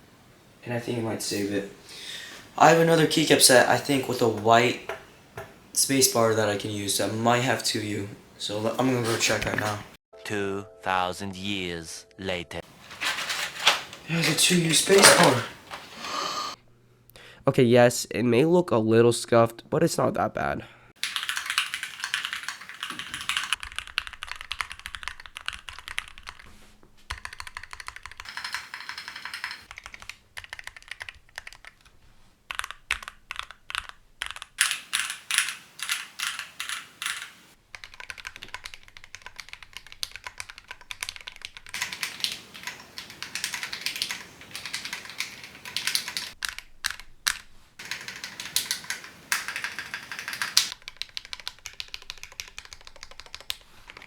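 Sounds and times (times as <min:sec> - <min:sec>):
mechanical keyboard typing: 0:12.6 - 0:16.0, 0:21.0 - 0:26.4, 0:27.1 - 0:31.9, 0:32.5 - 0:54.0.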